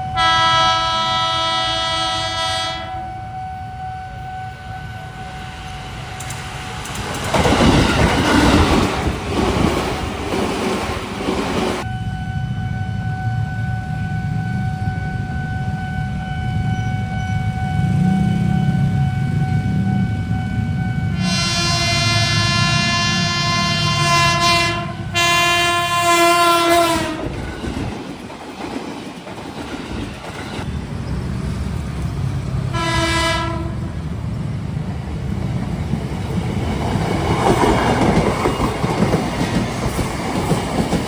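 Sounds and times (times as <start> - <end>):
electric train horn: 0.0 - 6.4, 11.8 - 27.3, 32.7 - 34.1
train wheels clacking over joints: 6.2 - 11.8, 27.0 - 32.5, 35.4 - 41.0.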